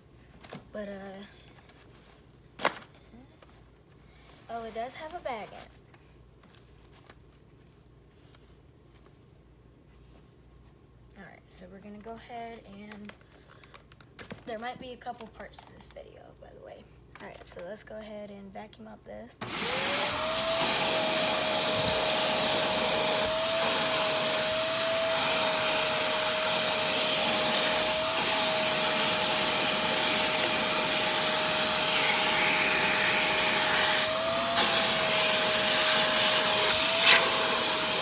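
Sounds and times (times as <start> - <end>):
vacuum cleaner running: 19.4 - 38.0.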